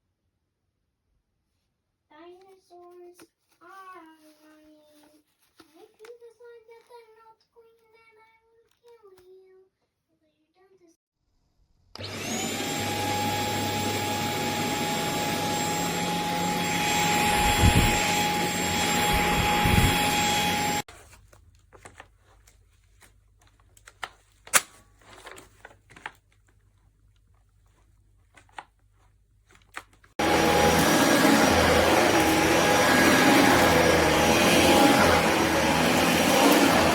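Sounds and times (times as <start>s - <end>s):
stick vacuum cleaner whining: 12.0s - 20.9s, 30.2s - 36.9s.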